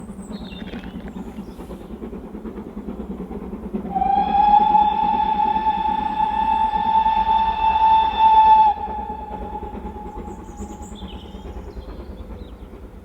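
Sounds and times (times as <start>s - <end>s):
steam locomotive running: 0.0s - 13.0s
steam whistle: 3.8s - 11.7s.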